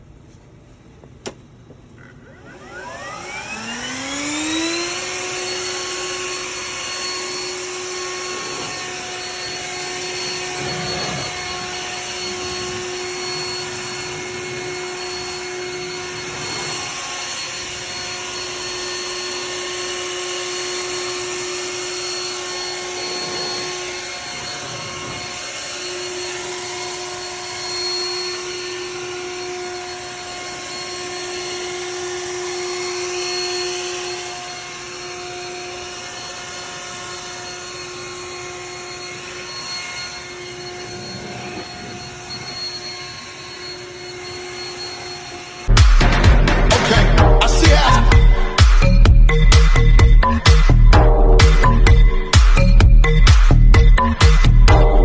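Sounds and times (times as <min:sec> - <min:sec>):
electric air blower whining: 0:00.0 - 0:55.0.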